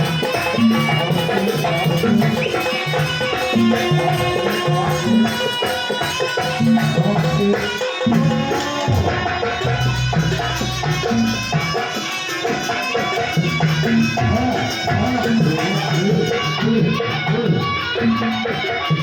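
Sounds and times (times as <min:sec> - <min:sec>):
gamelan ensemble playing: 0:07.0 - 0:14.5.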